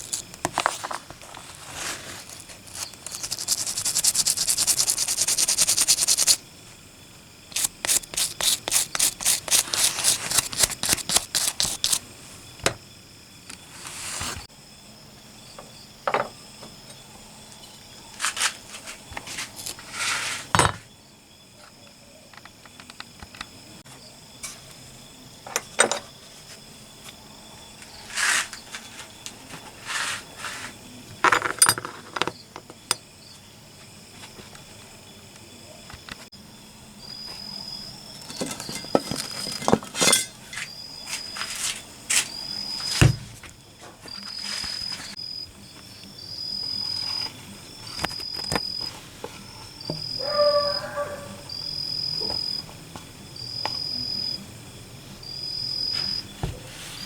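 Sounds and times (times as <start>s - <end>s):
insect droning and chirping: 0.0s - 57.0s
small metal parts clinking: 38.2s - 40.7s.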